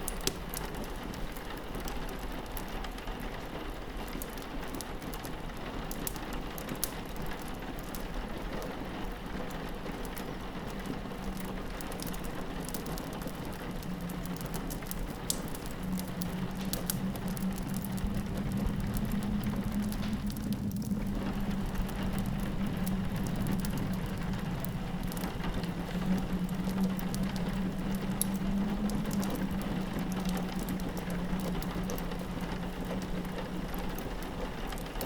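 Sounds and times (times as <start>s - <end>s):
rain pattering on a window: 0.0s - 35.0s
wood fire crackling: 0.0s - 35.0s
low steady drone: 13.4s - 35.0s.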